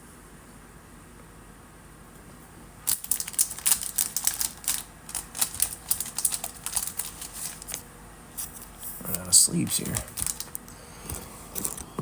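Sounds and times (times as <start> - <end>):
faint room hum: 0.0 - 12.0
plastic card sleeves crinkling: 2.9 - 10.8, 11.6 - 11.9.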